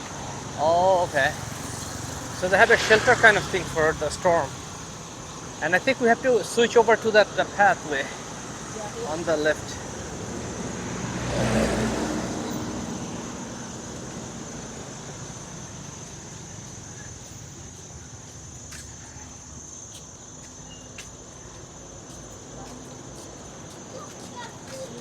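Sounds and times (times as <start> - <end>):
road vehicle passing: 0.0 - 19.7
high-pitched insect drone: 0.0 - 25.0.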